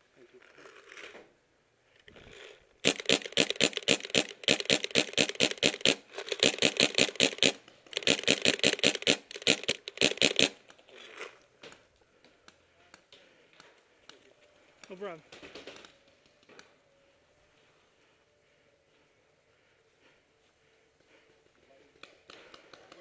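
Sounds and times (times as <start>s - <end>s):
paintball marker firing rapidly: 2.8s - 10.6s.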